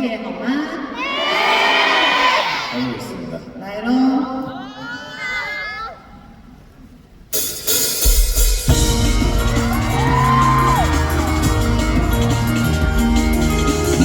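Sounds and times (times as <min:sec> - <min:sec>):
live rock band playing: 0:07.4 - 0:14.0.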